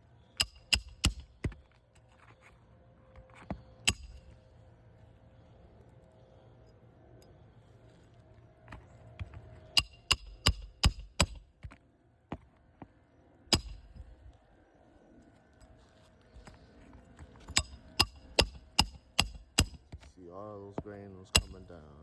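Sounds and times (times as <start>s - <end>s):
hammer driving nails: 0.4s - 1.3s, 3.9s - 4.2s, 9.8s - 11.4s, 13.5s - 14.0s, 17.5s - 20.0s, 21.3s - 21.6s.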